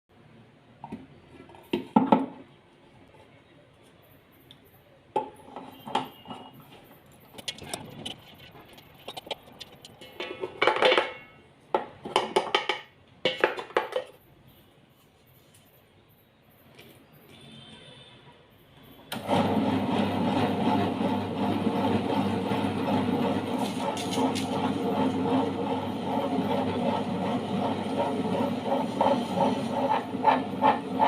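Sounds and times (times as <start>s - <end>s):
metal utensils clinking and clattering: 7.3s - 11.4s.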